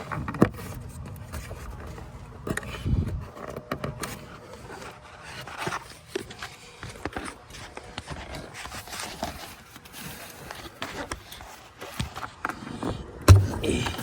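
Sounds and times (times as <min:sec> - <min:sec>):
dull thump: 0:13.3 - 0:14.0.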